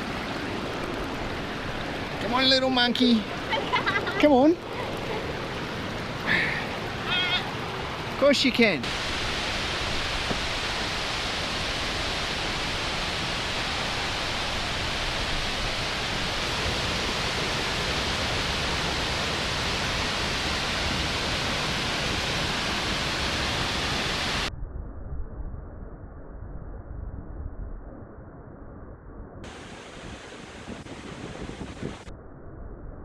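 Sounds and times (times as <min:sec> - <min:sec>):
waterfall roaring: 0:00.0 - 0:24.5, 0:29.4 - 0:32.1.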